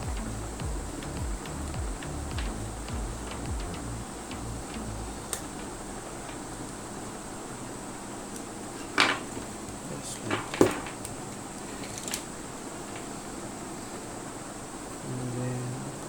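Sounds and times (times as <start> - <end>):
brief low hum: 0.0 - 5.9
small parts clicking: 0.0 - 6.8, 10.2 - 12.3
background hiss: 0.0 - 16.0.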